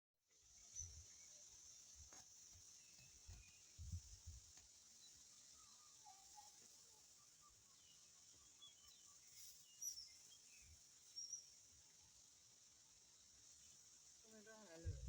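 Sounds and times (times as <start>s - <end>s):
high-pitched outdoor hiss: 0.2s - 15.0s
faint birds chirping: 0.3s - 15.0s.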